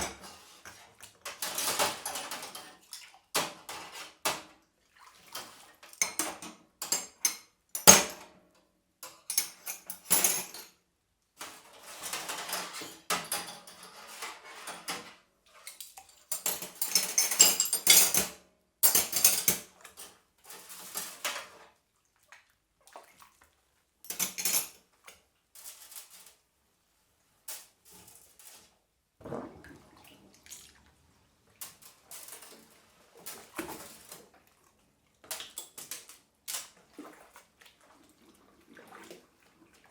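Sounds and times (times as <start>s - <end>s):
dishes clattering: 16.3s - 19.7s
water splashing: 29.2s - 31.6s.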